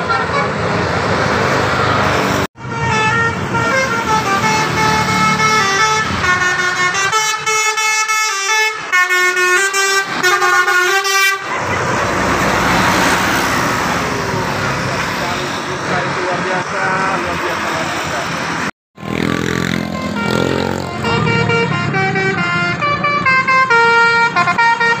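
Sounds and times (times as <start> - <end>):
bus engine: 0.0 - 25.0
traffic noise: 0.0 - 25.0
musical bus air horn tune: 2.6 - 11.7, 19.8 - 25.0.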